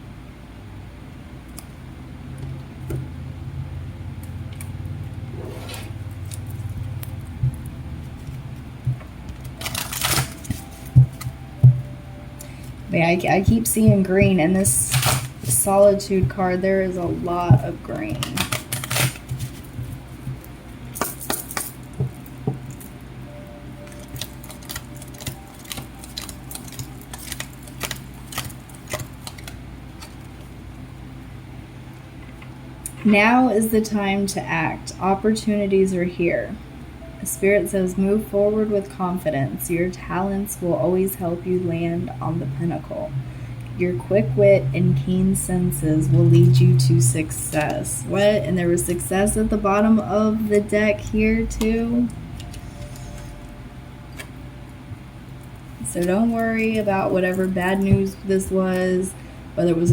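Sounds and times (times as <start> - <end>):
steady low hum: 0.0 - 59.9
cards sliding swish: 5.3 - 6.0.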